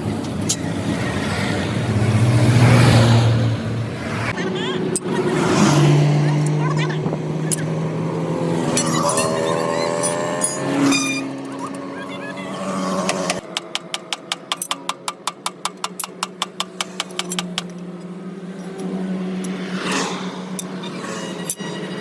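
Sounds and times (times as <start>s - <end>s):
vehicle engine humming: 0.0s - 22.0s
ratchet wrench clicking: 13.1s - 17.8s
whoosh of passing vehicle: 19.0s - 21.2s.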